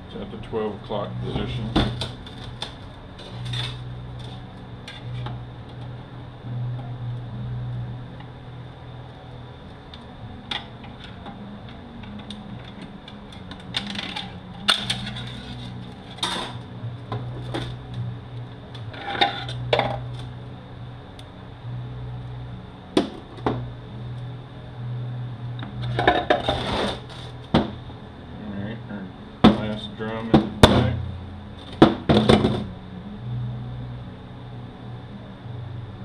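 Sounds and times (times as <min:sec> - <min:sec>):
steady low hum: 0:00.0 - 0:36.0.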